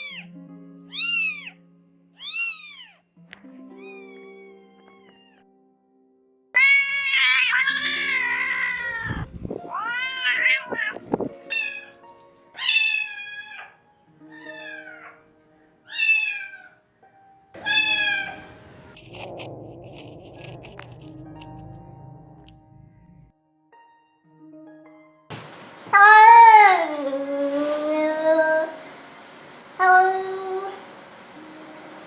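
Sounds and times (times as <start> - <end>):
cat meowing: 0.9 - 1.5, 2.2 - 3.0, 6.6 - 11.9, 12.6 - 13.7, 14.3 - 15.2, 15.9 - 16.8, 17.6 - 19.0, 25.3 - 31.7.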